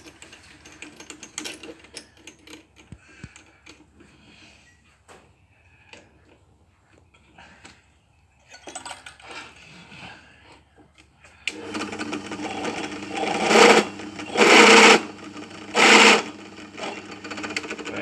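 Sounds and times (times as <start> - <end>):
drill bit clicks: 11.5 - 17.9
drill cutting into metal: 11.5 - 18.0
electric drill running: 11.5 - 18.0.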